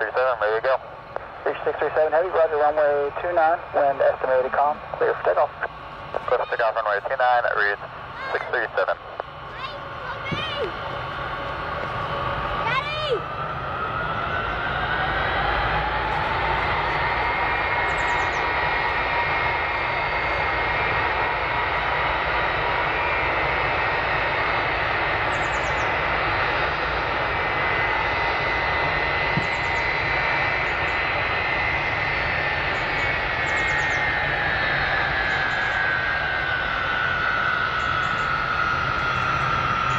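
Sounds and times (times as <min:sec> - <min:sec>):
jet engine roar: 0:00.0 - 0:39.9
jet engine whine: 0:00.0 - 0:39.9.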